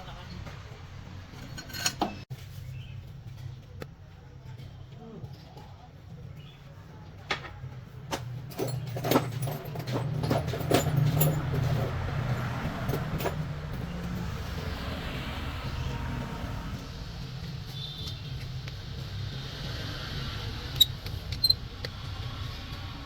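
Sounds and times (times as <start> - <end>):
metal clanks and knocks: 1.3 - 2.2, 7.3 - 14.4
engine humming: 7.6 - 23.0.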